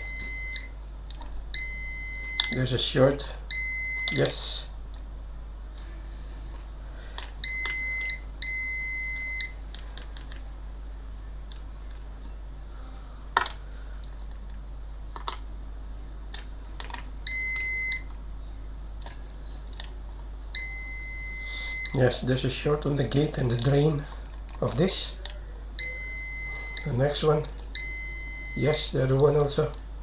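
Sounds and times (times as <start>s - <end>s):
multimeter continuity beeps: 0.0s - 0.8s, 1.5s - 4.6s, 7.4s - 9.6s, 17.2s - 18.2s, 20.5s - 29.8s.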